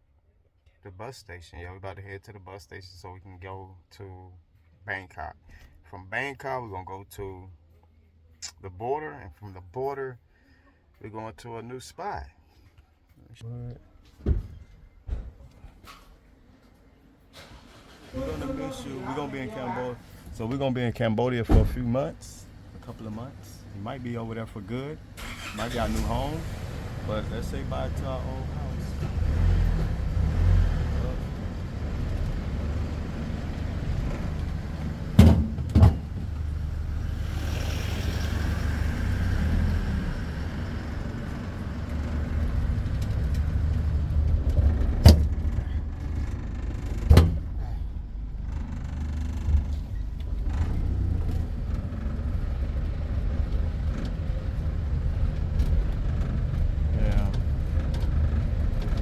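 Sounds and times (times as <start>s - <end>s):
tuk-tuk engine rumble: 17.4s - 59.0s
sharp knocks: 35.2s - 36.3s.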